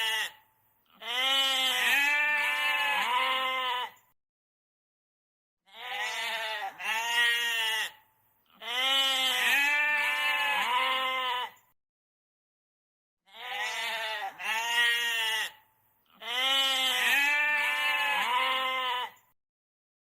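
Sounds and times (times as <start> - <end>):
goat bleating: 0.0 - 4.0, 5.7 - 11.6, 13.3 - 19.2.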